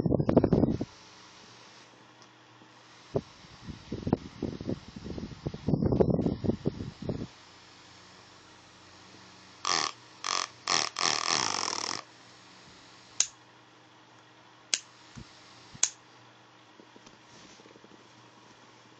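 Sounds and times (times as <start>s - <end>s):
small fan motor whirring: 0.0s - 13.9s, 14.7s - 16.2s
sharp clicks: 13.2s - 13.4s, 15.8s - 16.0s.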